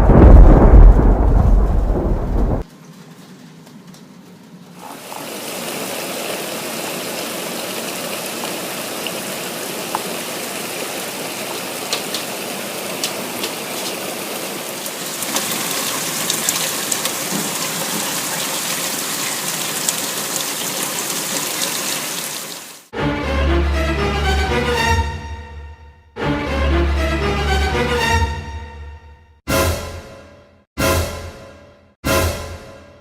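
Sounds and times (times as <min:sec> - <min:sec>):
rain hissing: 0:04.8 - 0:22.9.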